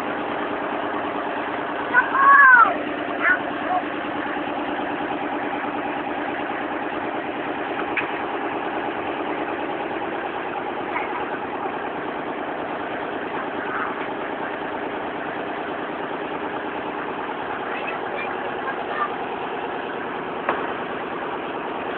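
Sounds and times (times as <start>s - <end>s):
engine running steadily: 0.0s - 21.9s.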